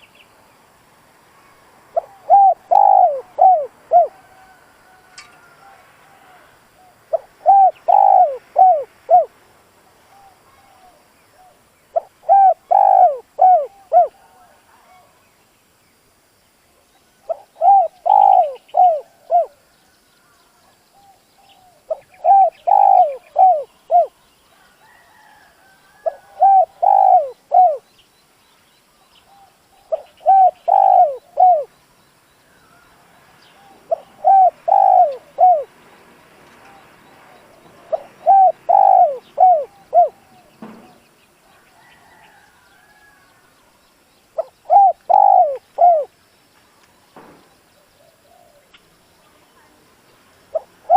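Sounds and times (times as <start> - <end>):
dove cooing: 1.9 - 9.3, 10.1 - 15.1, 17.2 - 19.6, 21.0 - 24.2, 26.0 - 27.9, 29.3 - 31.7, 33.6 - 35.7, 37.8 - 41.0, 44.4 - 46.1, 50.5 - 50.9.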